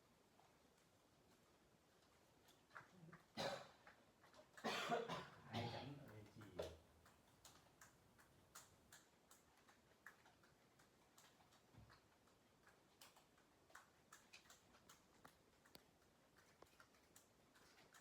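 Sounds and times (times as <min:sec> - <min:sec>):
faint light ticks: 0:06.1 - 0:18.0.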